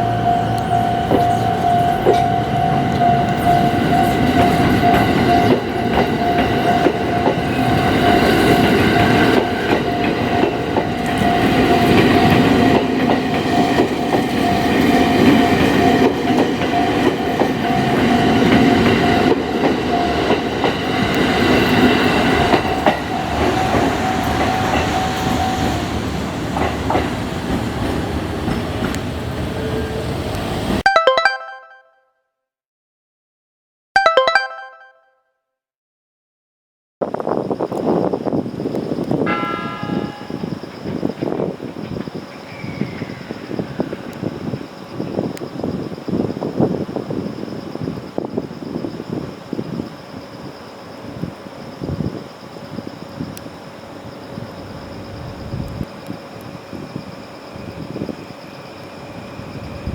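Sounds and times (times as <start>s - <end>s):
crossing warning bell ringing: 0.0s - 23.0s, 39.2s - 41.5s
train wheels clattering: 26.4s - 29.2s.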